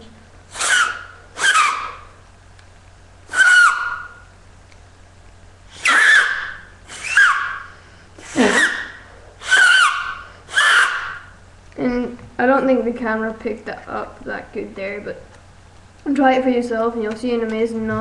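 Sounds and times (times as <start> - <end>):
paper whistle squealing: 0.5 - 2.2, 3.3 - 4.2, 5.7 - 11.3.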